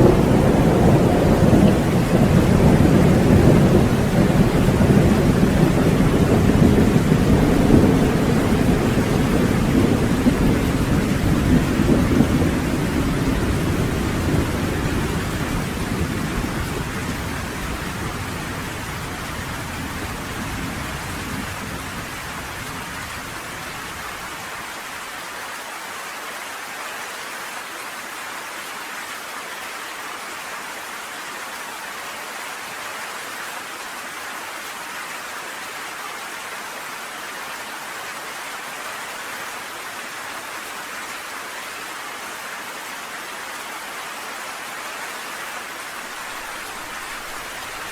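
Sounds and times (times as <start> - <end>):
thunder rumble: 0.0 - 24.7
heavy rain: 0.0 - 47.9.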